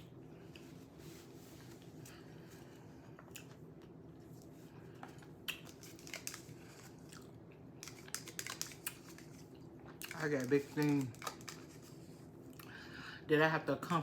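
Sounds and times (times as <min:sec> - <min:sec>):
low steady hum: 0:00.0 - 0:14.0
clicks and smacks of eating: 0:03.2 - 0:04.0, 0:05.0 - 0:11.9.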